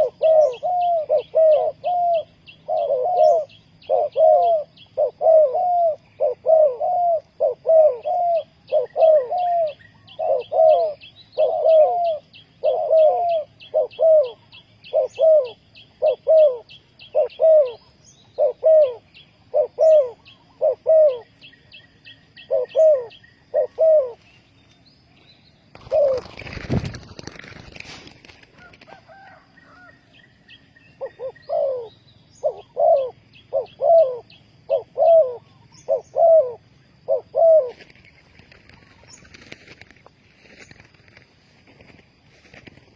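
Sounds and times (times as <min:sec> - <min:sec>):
dove cooing: 0:00.0 - 0:24.3, 0:25.7 - 0:39.8
wing flapping: 0:25.7 - 0:29.2.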